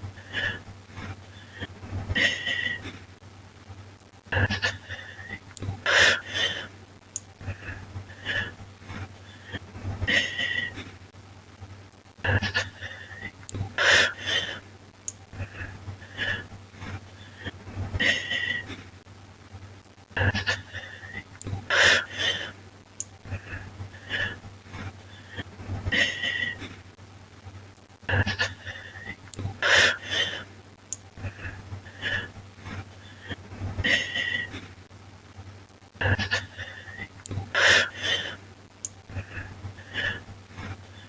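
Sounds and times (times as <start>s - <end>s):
person breathing: 0.0s - 3.1s, 4.8s - 6.8s, 7.4s - 11.0s, 12.8s - 14.6s, 15.3s - 19.0s, 20.6s - 22.6s, 23.2s - 26.8s, 28.6s - 30.5s, 31.2s - 34.8s, 36.1s - 38.4s, 39.1s - 41.0s
steady low hum: 0.0s - 41.0s.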